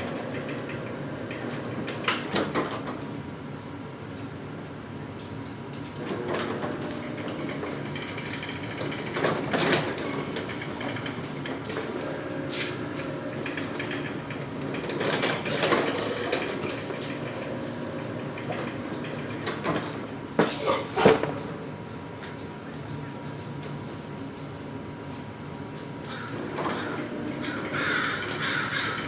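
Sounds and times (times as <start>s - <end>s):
garage door rolling rumble: 0.0s - 3.4s, 5.9s - 21.9s, 26.1s - 29.0s.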